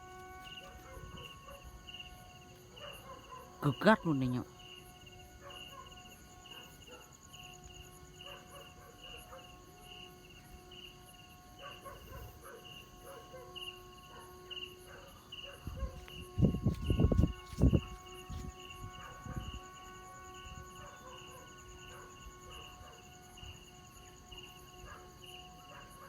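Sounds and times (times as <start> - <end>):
wind buffeting microphone: 15.6 - 19.6.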